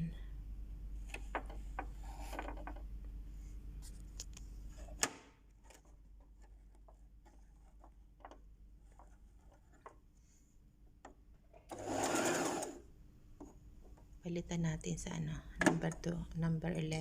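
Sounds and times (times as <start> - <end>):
sewing machine hum: 11.7 - 12.9.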